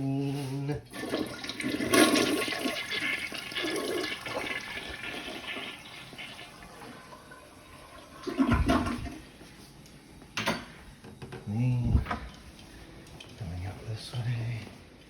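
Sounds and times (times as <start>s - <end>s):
toilet flushing: 0.8s - 9.3s.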